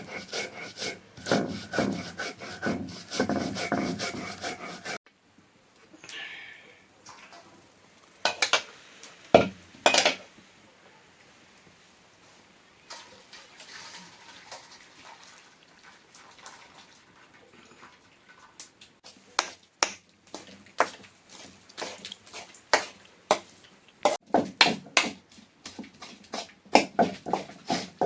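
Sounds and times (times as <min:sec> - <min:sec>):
metal pots and utensils clattering: 0:08.2 - 0:08.7, 0:09.4 - 0:10.3.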